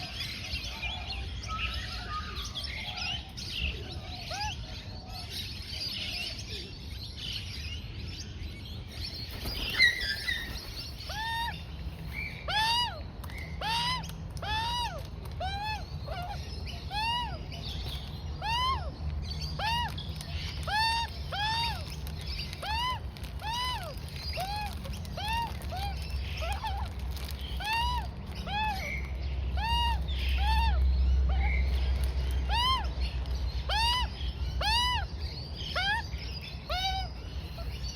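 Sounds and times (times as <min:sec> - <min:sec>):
bird chirps: 0:00.0 - 0:37.9
young magpie calling: 0:09.5 - 0:31.6, 0:32.4 - 0:33.0, 0:33.6 - 0:37.9.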